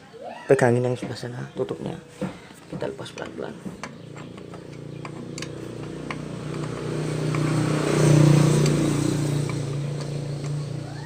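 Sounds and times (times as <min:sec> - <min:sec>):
passing vehicle engine: 0:03.6 - 0:11.0.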